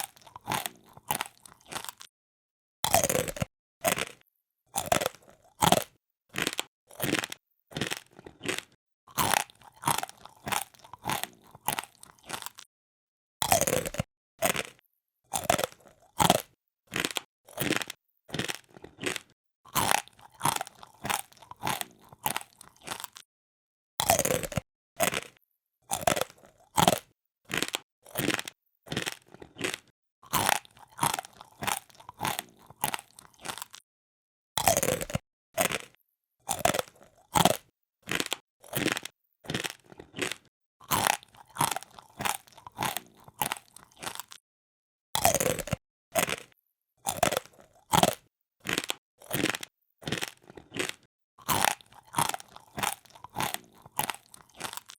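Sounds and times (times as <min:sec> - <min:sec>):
person crunching crisp food: 0:00.0 - 0:02.1, 0:02.8 - 0:04.2, 0:04.8 - 0:12.7, 0:13.4 - 0:23.3, 0:24.0 - 0:33.8, 0:34.6 - 0:44.4, 0:45.2 - 0:54.9.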